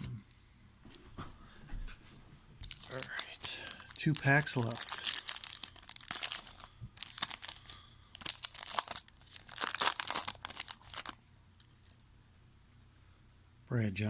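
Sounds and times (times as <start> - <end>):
card pack wrapper tearing: 2.6 - 11.2.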